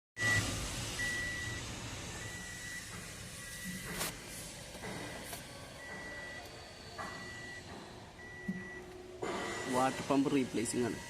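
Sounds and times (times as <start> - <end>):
electronic warning beeps: 0.2 - 4.1, 5.6 - 11.0
steady background noise: 0.2 - 11.0.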